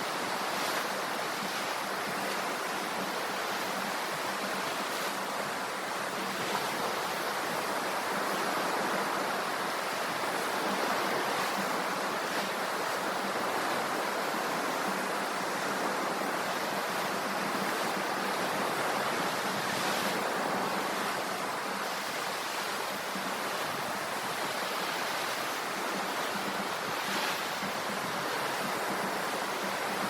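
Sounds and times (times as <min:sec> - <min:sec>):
ocean surf washing on shore: 0:00.0 - 0:30.0.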